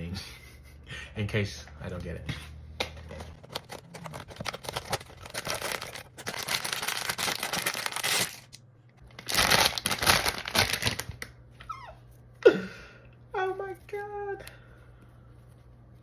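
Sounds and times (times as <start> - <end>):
plastic wrapper crinkling: 3.1 - 11.4.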